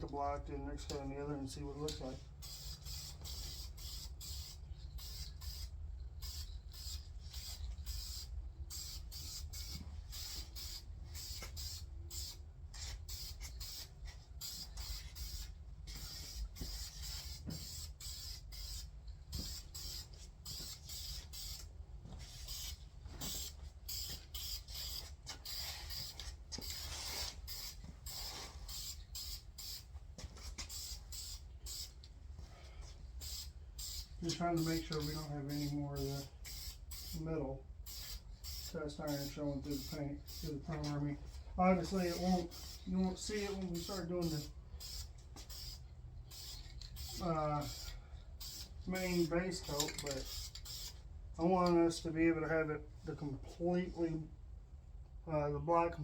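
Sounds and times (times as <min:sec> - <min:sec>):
spray paint hissing bursts: 0:02.2 - 0:32.0, 0:33.2 - 0:37.2, 0:37.8 - 0:41.0, 0:41.8 - 0:51.0.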